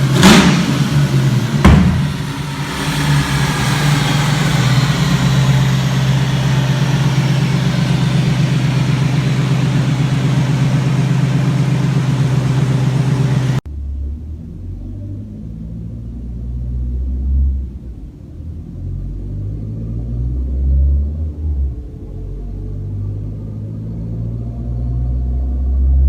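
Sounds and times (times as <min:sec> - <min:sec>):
engine backfire bang: 0:00.0 - 0:13.6
car engine running: 0:00.0 - 0:13.7.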